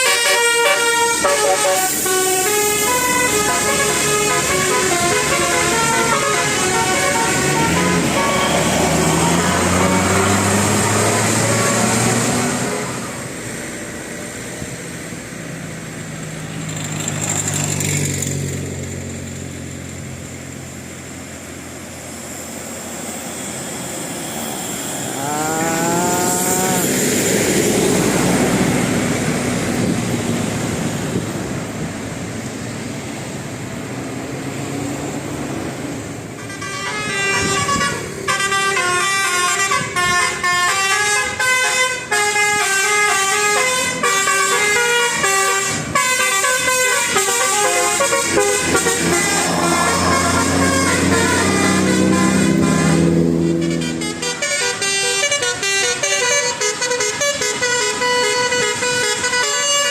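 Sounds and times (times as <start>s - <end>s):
bus musical horn: 0.0s - 13.2s, 25.0s - 28.9s, 36.3s - 59.9s
vehicles passing on road: 0.0s - 59.9s.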